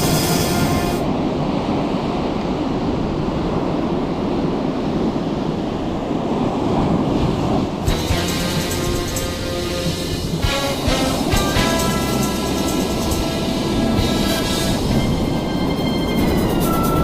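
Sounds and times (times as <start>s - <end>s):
background music: 0.0s - 1.1s, 7.8s - 17.0s
ocean surf breaking: 0.0s - 17.0s
wind on microphone: 0.0s - 17.0s.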